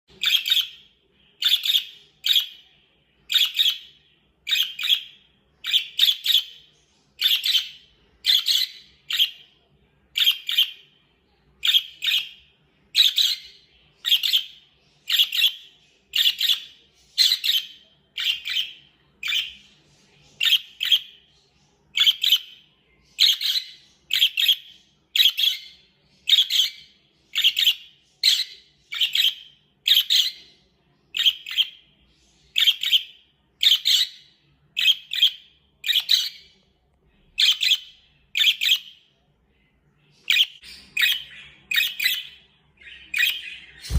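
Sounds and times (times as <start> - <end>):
budgerigar chirping: 0.2 - 2.6, 3.3 - 9.5, 10.2 - 10.8, 11.6 - 19.6, 22.0 - 30.5, 32.6 - 36.5, 37.4 - 39.0.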